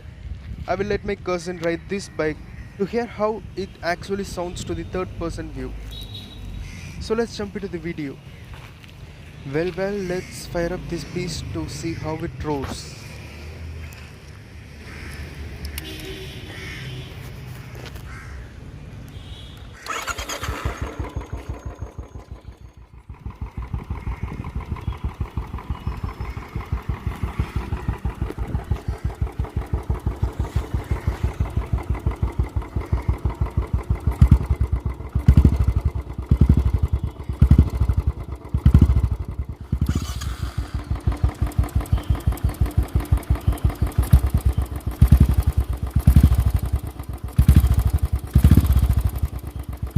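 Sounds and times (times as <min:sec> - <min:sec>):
motorcycle engine idling and revving: 0:00.0 - 0:49.9.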